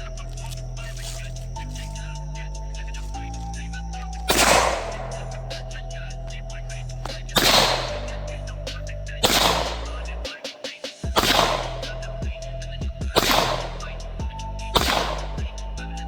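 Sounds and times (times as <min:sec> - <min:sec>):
background music with bass line: 0:00.0 - 0:16.0
pistol shots: 0:04.3 - 0:05.7, 0:07.4 - 0:08.5, 0:09.2 - 0:12.1, 0:13.2 - 0:14.1, 0:14.8 - 0:15.5.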